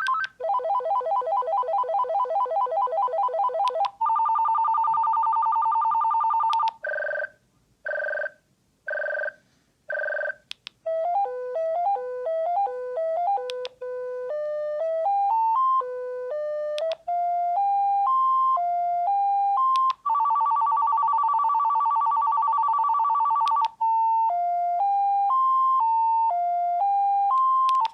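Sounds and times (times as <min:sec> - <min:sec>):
cordless telephone ringing: 0:00.1 - 0:07.3, 0:07.9 - 0:10.4, 0:20.0 - 0:23.8.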